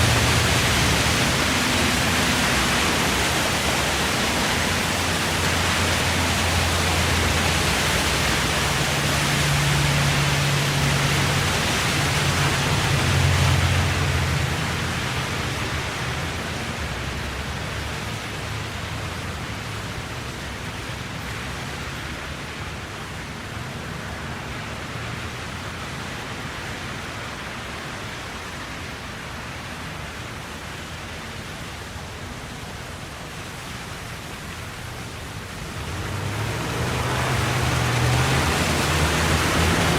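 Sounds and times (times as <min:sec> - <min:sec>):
vehicle passing: 0:00.0 - 0:16.8, 0:35.5 - 0:39.9
distant road noise: 0:00.0 - 0:39.9.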